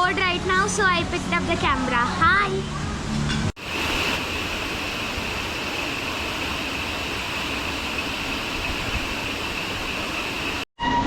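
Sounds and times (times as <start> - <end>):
waterfall rushing: 3.6 - 10.7.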